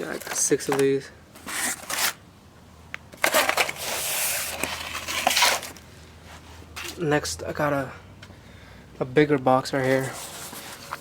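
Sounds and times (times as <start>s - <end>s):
packaging rustling and crinkling: 0.0s - 2.2s, 3.2s - 5.8s, 9.9s - 11.0s.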